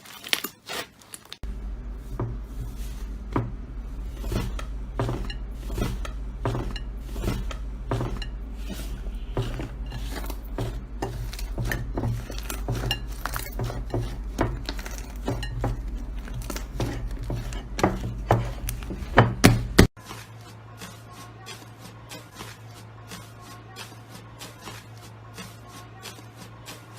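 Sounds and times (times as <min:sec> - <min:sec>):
low hum: 0:01.4 - 0:19.8.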